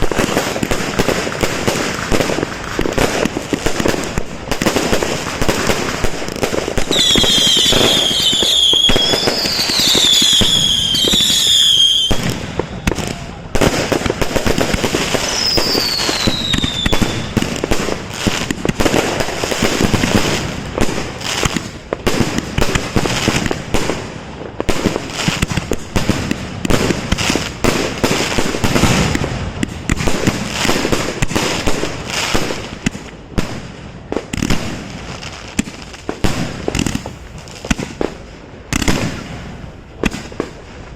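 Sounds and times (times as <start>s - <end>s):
fireworks bangs and crackling: 0.0s - 40.9s
firework whistles gliding down: 6.8s - 13.7s, 14.3s - 17.4s.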